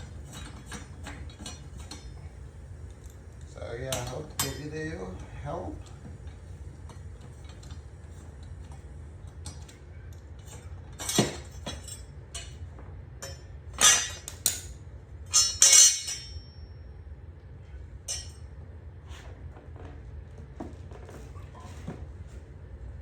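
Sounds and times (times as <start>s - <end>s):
metal tools clinking: 3.9s - 6.0s, 10.4s - 12.6s, 13.2s - 14.7s, 15.3s - 16.6s.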